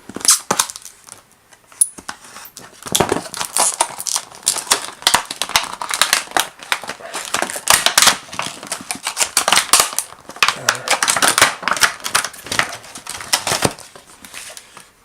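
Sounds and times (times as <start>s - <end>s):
plastic packaging crinkling: 2.4s - 14.9s.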